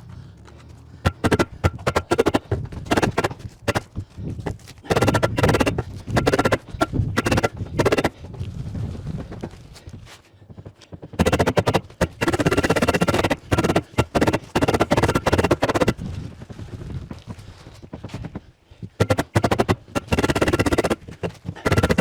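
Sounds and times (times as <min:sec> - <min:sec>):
music with percussive beat: 0:01.1 - 0:03.8, 0:04.9 - 0:08.1, 0:11.2 - 0:15.9, 0:19.0 - 0:21.0.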